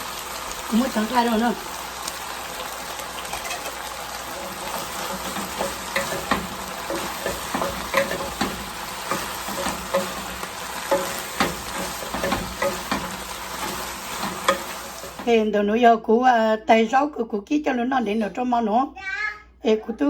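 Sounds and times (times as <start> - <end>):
food sizzling in a hot pan: 0.0 - 15.5
spatula scraping a pan: 3.2 - 15.3.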